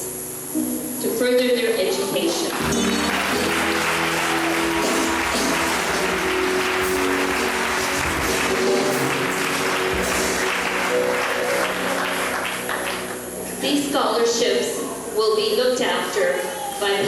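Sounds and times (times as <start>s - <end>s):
audience applauding: 2.2s - 13.6s
instrumental music: 2.6s - 14.2s.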